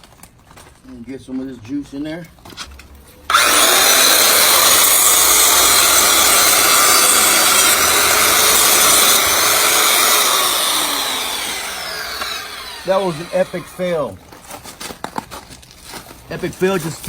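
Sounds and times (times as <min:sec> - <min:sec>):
circular saw whining: 0:03.3 - 0:14.2.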